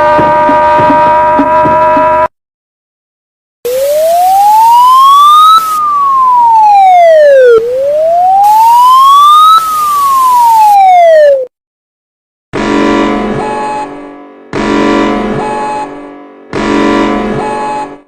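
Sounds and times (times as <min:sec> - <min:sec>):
emergency siren wailing: 0:00.0 - 0:02.3, 0:03.7 - 0:11.5.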